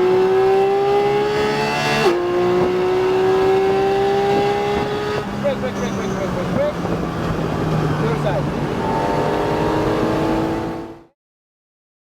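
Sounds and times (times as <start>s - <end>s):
car engine accelerating: 0.0s - 11.1s.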